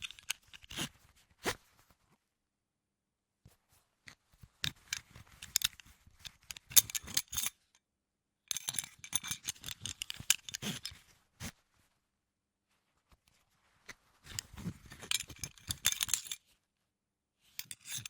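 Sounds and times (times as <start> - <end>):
belt buckle clicking and rattling: 0.0 - 0.8, 4.7 - 7.6, 8.5 - 11.0, 14.3 - 16.4, 17.6 - 18.0.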